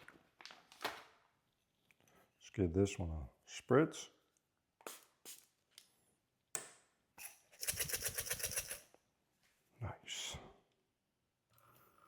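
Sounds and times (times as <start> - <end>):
coffee beans rattling: 7.6 - 8.8.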